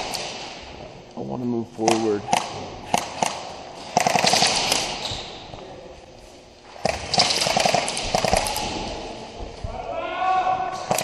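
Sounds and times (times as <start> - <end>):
airsoft guns rapid firing: 1.8 - 5.1, 6.8 - 9.1.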